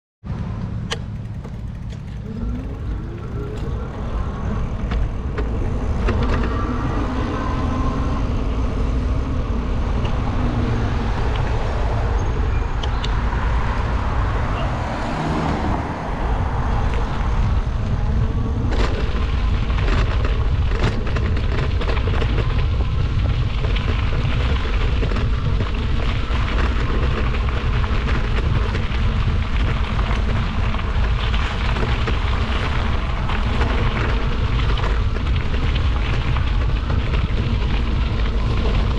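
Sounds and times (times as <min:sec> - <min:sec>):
knocks and rattles from bumpy ground: 0:00.8 - 0:06.8, 0:16.7 - 0:38.9
wind buffeting microphone: 0:01.2 - 0:38.9.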